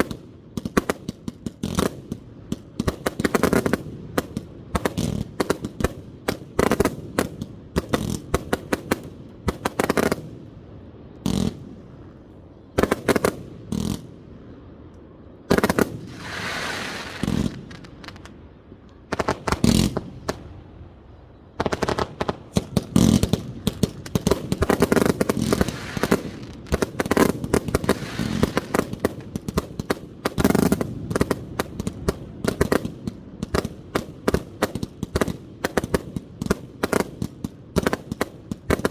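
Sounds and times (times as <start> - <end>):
fireworks booming: 15.5 - 18.4, 19.0 - 21.0, 21.6 - 38.9.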